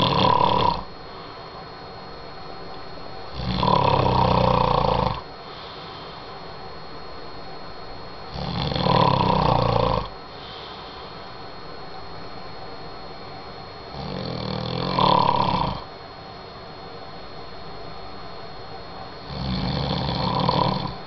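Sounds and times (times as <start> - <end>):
man snoring: 0.0 - 1.5, 3.3 - 6.4, 8.3 - 11.2, 13.9 - 15.9, 19.2 - 21.0
quiet breathing: 0.7 - 1.9, 3.4 - 7.0, 9.4 - 11.8.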